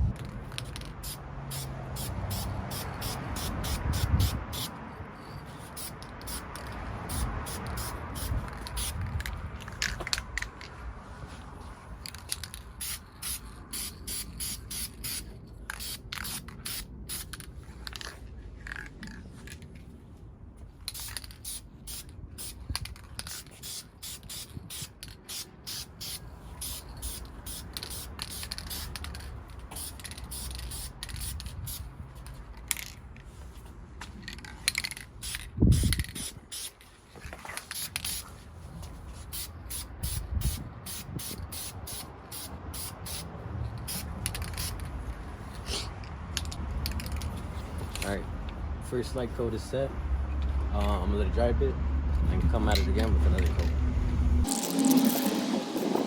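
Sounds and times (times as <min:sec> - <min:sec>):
spray paint can hissing: 0:00.6 - 0:04.7, 0:05.5 - 0:09.3, 0:12.1 - 0:18.0, 0:20.9 - 0:31.9, 0:34.7 - 0:36.8, 0:37.6 - 0:38.3, 0:39.2 - 0:44.9.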